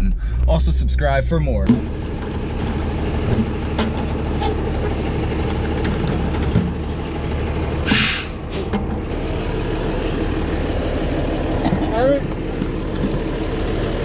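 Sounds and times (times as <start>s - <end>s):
truck engine idling: 0.0s - 14.0s
sharp air hiss: 7.9s - 8.7s.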